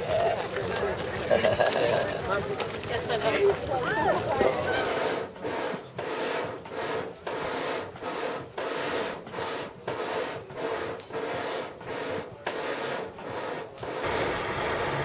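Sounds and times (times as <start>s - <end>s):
hand tool rasping on metal: 4.4s - 15.0s.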